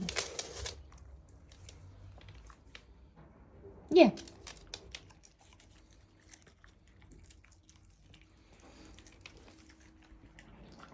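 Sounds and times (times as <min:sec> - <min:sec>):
dog chewing wet crunching: 0:04.3 - 0:10.9.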